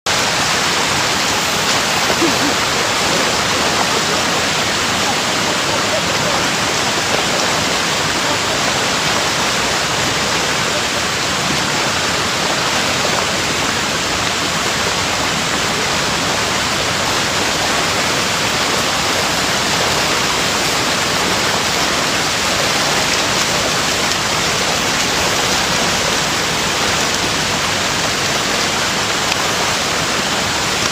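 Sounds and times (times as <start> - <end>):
flowing water rushing: 0.0 - 30.9.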